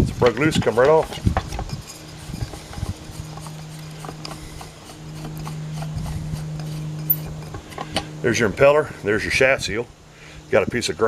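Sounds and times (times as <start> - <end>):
steady low hum: 0.0 - 11.0
metal pump parts clinking: 0.2 - 8.0.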